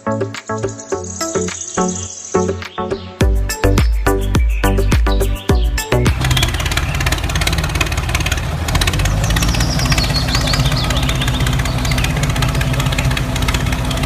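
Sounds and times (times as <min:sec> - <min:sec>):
high chirps: 0:00.0 - 0:13.9
engine idling with knocking beat: 0:03.2 - 0:14.0.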